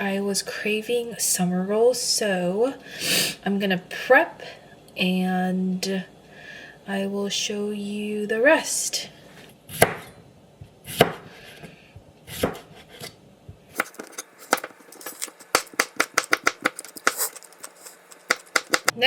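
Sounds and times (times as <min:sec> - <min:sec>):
knife chopping on cutting board: 0:09.7 - 0:10.1, 0:10.9 - 0:11.4, 0:12.3 - 0:13.1, 0:13.7 - 0:17.3, 0:18.3 - 0:19.0.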